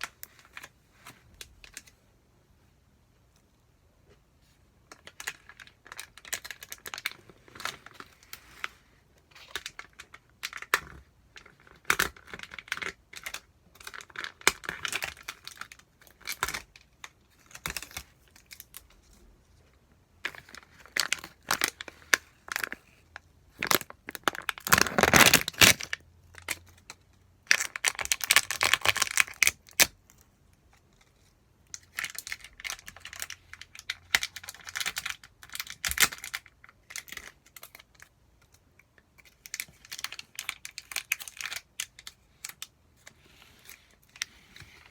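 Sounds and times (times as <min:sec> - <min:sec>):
plastic packaging crinkling: 0:20.2 - 0:30.0, 0:39.2 - 0:42.7.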